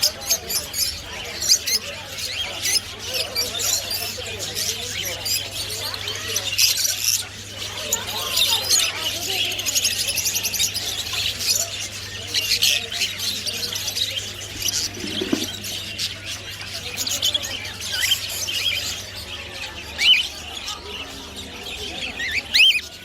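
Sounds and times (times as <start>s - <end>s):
caged birds chirping and squawking: 0.0s - 23.0s.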